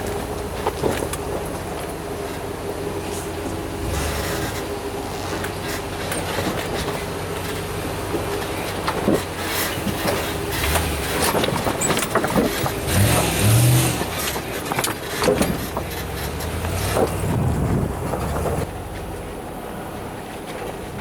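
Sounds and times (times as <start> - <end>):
off-road vehicle engine revving: 0.0 - 21.0
knocks and rattles: 4.3 - 18.7.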